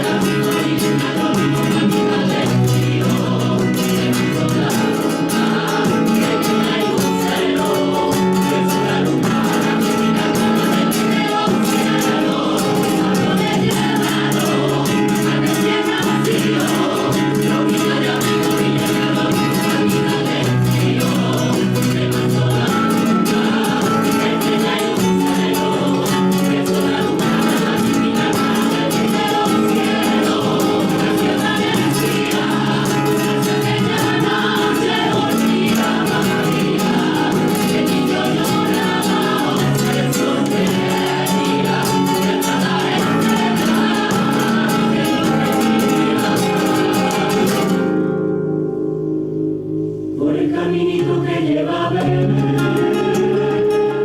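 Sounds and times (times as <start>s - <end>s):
choir singing carol: 0.0s - 48.2s, 50.0s - 54.0s
guitar: 0.0s - 54.0s.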